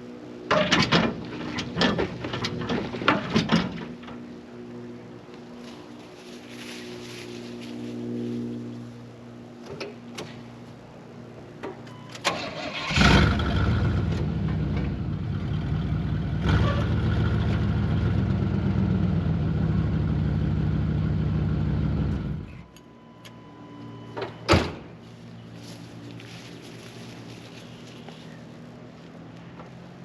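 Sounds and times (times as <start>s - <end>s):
truck engine starting and idling: 11.8s - 24.9s.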